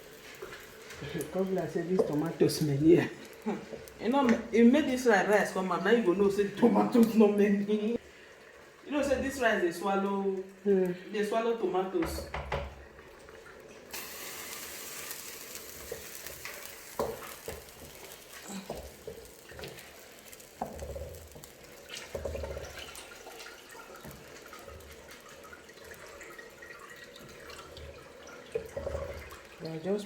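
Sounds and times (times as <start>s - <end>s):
food sizzling in a pot: 0.0s - 8.0s, 13.9s - 30.0s.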